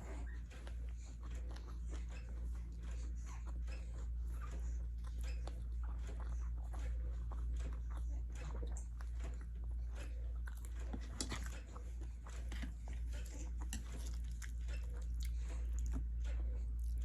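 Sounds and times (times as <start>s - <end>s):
low hum: 0.0s - 17.0s
person chewing noodles: 0.0s - 17.0s.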